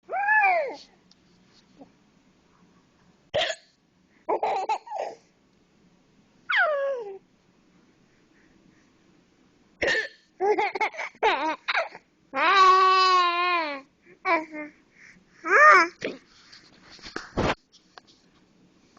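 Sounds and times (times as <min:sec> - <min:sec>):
baby laughing and squealing: 0:06.5 - 0:07.2.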